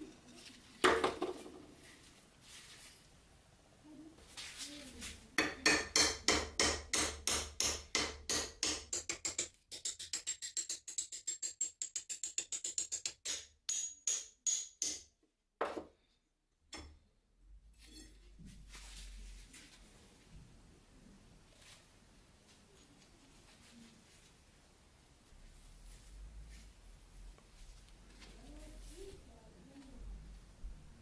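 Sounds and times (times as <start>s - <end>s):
hand tool striking steel: 5.4s - 15.1s.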